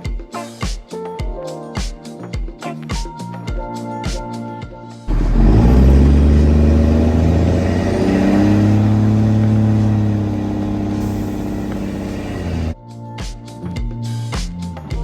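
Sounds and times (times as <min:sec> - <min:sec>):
garbage truck engine revving: 0:05.1 - 0:12.8.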